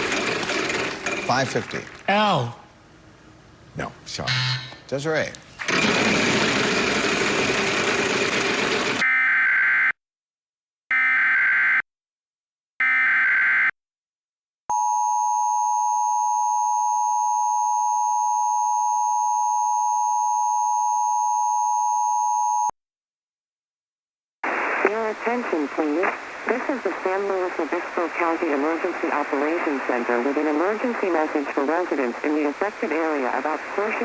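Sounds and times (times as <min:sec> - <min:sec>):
two-tone attention signal: 0:04.3 - 0:04.8
static hiss: 0:24.4 - 0:34.0.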